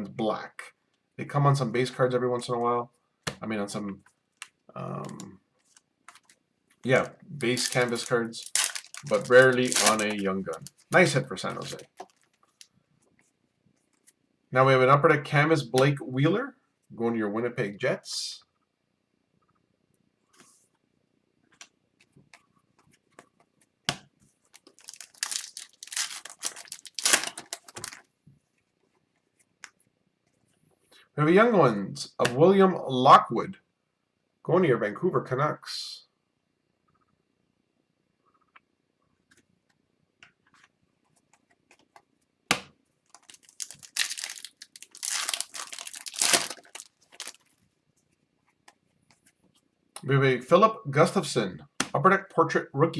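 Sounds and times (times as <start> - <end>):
packaging crinkling and tearing: 6.9 - 12.7, 24.5 - 28.1, 43.1 - 47.5
foil wrapper crackling: 7.0 - 12.3, 24.5 - 28.0, 43.1 - 47.5
sharp snap of wrapper: 7.6 - 10.2, 43.2 - 47.4.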